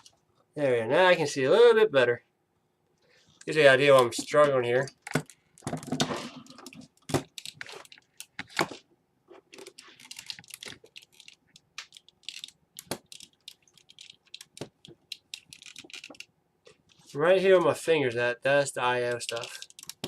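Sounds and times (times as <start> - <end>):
small plastic clicks and taps: 19.3 - 20.0.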